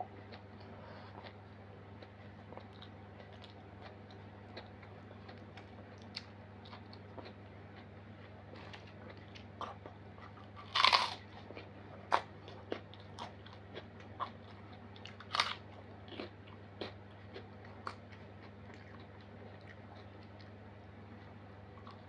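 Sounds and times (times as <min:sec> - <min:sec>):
chewing crunches: 0:00.2 - 0:20.6, 0:21.7 - 0:22.0
loud crunching bites: 0:10.6 - 0:11.2.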